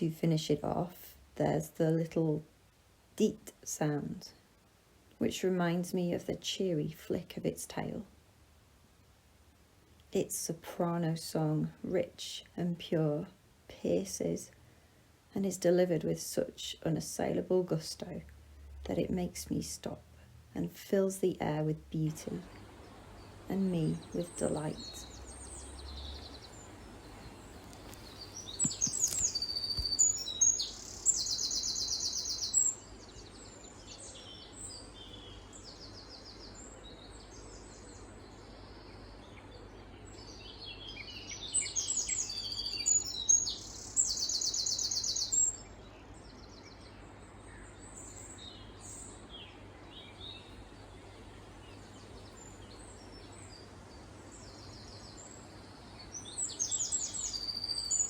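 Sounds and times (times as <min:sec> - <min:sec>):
wren singing: 0:20.8 - 0:58.0
faint bird chirps: 0:22.2 - 0:58.0.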